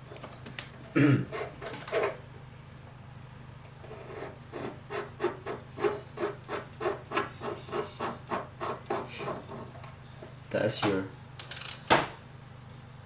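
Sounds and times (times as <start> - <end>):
metal threads scraping: 1.3 - 2.2, 3.8 - 9.9.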